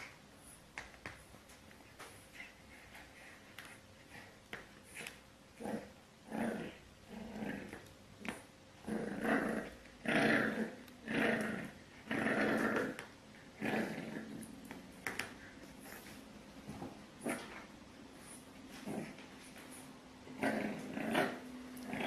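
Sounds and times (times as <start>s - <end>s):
pet animal growling: 5.6s - 14.8s, 20.3s - 22.0s.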